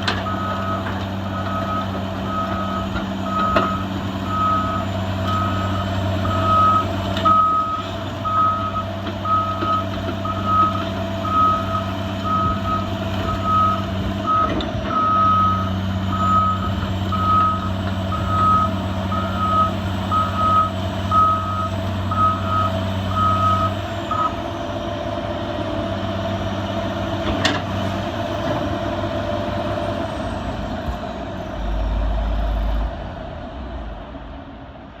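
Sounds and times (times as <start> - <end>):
diesel engine running: 0.0 - 35.0
reversing alarm beeping: 0.2 - 24.4.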